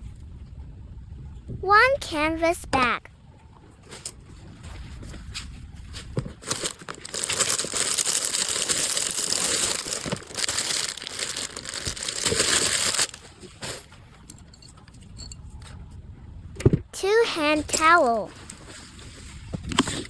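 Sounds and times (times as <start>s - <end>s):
plastic packaging crinkling: 6.2s - 13.8s.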